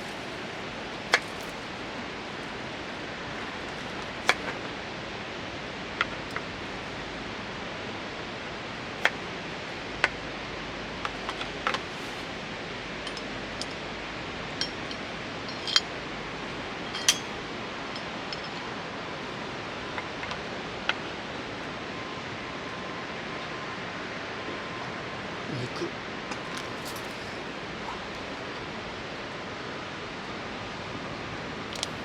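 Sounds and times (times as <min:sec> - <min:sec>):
steady rushing noise: 0:00.0 - 0:32.0
cookware clinking: 0:16.9 - 0:17.4.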